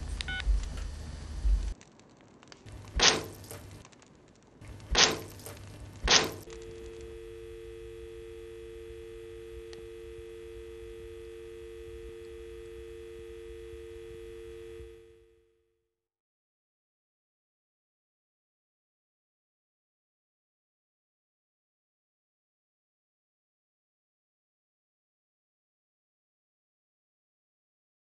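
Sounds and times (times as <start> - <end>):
telephone dial tone: 6.5 - 15.5.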